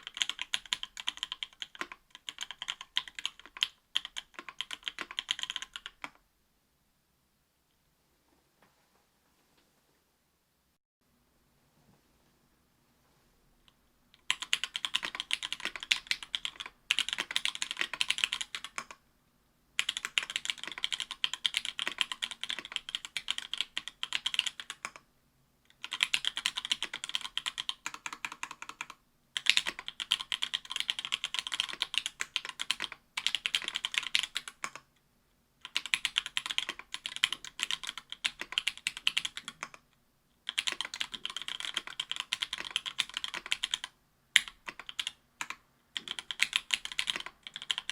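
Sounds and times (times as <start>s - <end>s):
mechanical keyboard typing: 0.0s - 6.2s, 14.2s - 19.0s, 19.8s - 25.0s, 25.7s - 34.8s, 35.6s - 39.8s, 40.4s - 47.9s.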